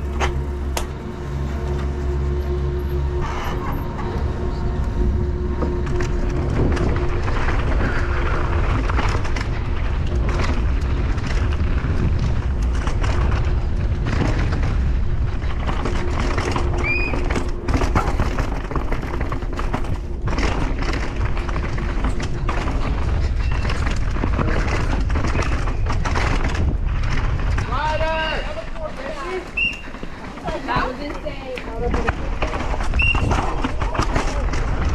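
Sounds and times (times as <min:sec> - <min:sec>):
wind buffeting microphone: 0:03.1 - 0:34.9
mountain bike clattering: 0:05.7 - 0:34.9.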